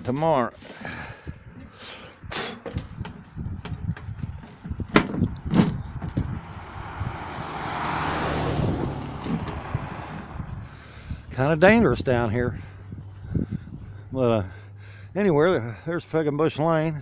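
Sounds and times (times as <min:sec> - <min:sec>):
car passing on snowy road: 0:06.3 - 0:11.2.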